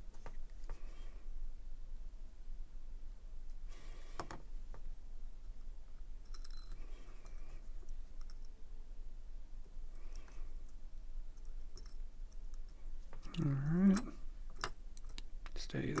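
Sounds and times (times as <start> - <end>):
small metal parts clicking: 6.3 - 8.6, 11.4 - 16.0.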